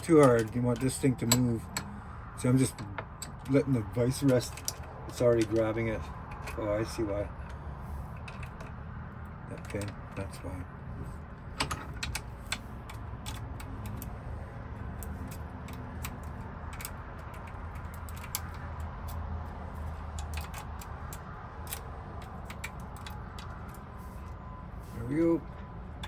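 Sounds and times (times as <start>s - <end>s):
metallic clicks and taps on lock: 0.0s - 2.0s, 9.5s - 10.0s, 14.9s - 19.2s, 19.8s - 24.4s.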